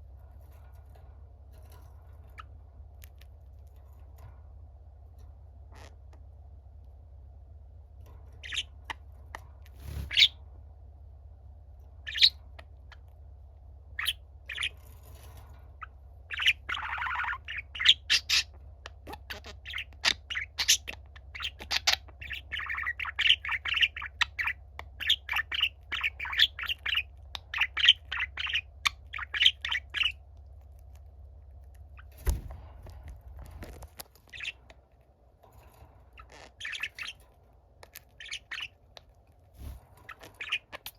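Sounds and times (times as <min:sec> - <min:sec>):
steady low hum: 0:00.0 - 0:40.9
budgerigar chirping: 0:08.4 - 0:09.0, 0:09.8 - 0:10.4, 0:12.0 - 0:13.0, 0:14.0 - 0:14.7, 0:15.8 - 0:30.2, 0:34.3 - 0:34.7, 0:36.2 - 0:37.2, 0:37.9 - 0:39.0, 0:40.1 - 0:40.9.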